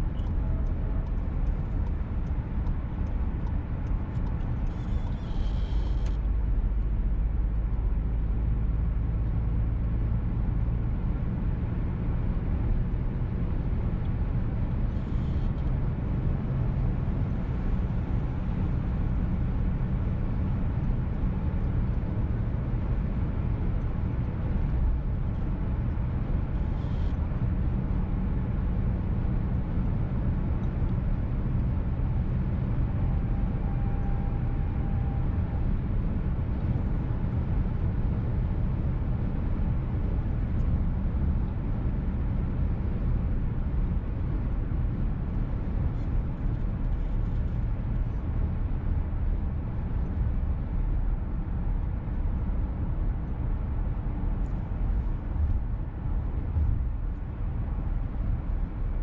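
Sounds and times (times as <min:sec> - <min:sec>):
car cabin engine and tyre rumble: 0:00.0 - 0:59.0
faint brief tone: 0:26.8 - 0:27.2.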